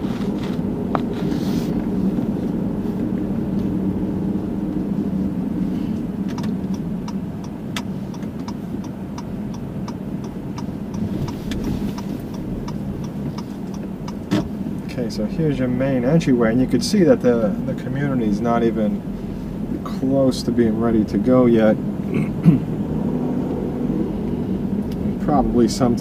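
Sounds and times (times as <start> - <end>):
car engine and road rumble: 0.0 - 26.0
turn signal clicking: 6.2 - 14.9.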